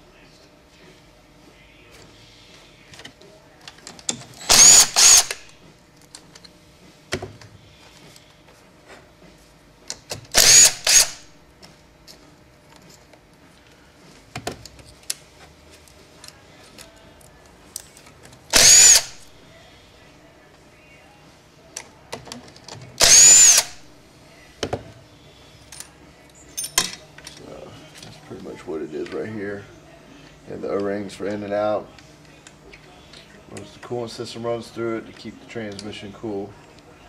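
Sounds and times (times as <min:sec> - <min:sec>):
power drill spinning bolts: 0:04.4 - 0:05.5, 0:10.3 - 0:11.2, 0:18.5 - 0:19.2, 0:23.0 - 0:23.8
clinks of parts and tools: 0:25.6 - 0:28.2.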